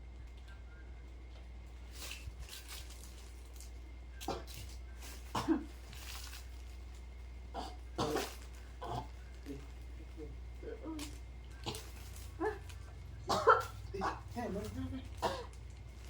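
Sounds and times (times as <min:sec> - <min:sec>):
man coughing: 0:05.3 - 0:05.7, 0:13.3 - 0:13.7.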